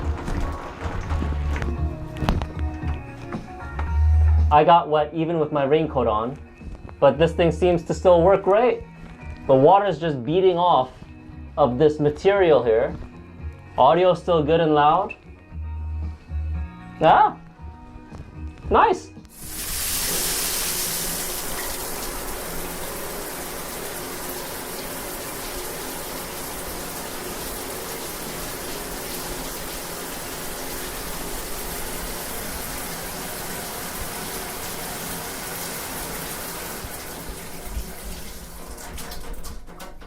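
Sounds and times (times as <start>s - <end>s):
shower spray running: 19.3s - 39.0s.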